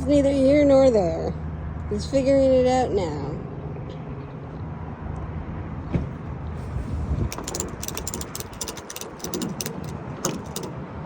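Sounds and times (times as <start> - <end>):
ratchet strap clicking: 7.3 - 10.7.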